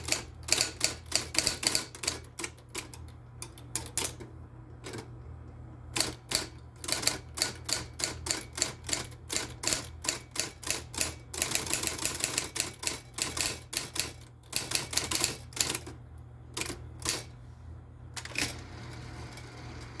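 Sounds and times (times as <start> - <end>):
electric typewriter key strikes: 0.0 - 4.2.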